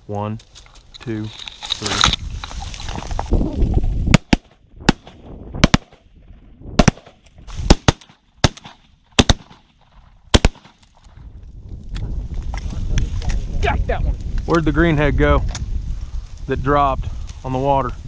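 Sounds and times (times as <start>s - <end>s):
shotgun shots: 4.1s - 6.1s, 6.8s - 10.8s.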